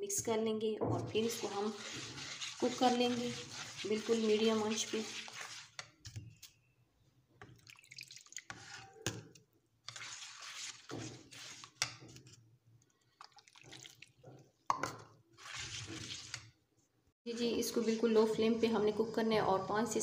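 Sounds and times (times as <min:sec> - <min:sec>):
liquid sloshing in pot: 0:00.8 - 0:06.1, 0:07.4 - 0:16.6.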